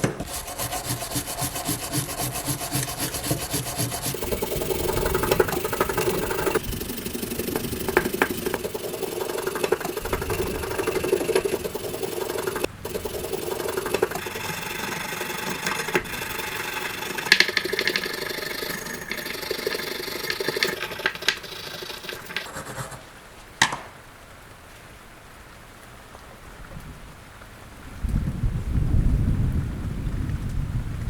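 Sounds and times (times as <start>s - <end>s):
hand rubbing and scraping metal: 0.0s - 23.2s.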